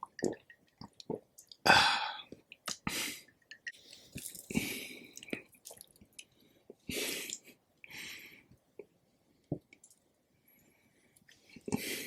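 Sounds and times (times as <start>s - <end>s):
close chewing with wet mouth sounds: 0.0s - 1.6s, 3.5s - 7.4s.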